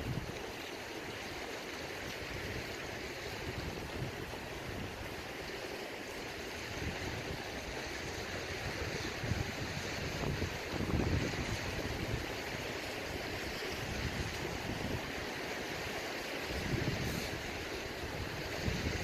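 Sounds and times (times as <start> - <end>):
water lapping at shore: 0.0 - 19.0
wind buffeting microphone: 2.2 - 5.4, 6.4 - 15.8, 16.4 - 19.0.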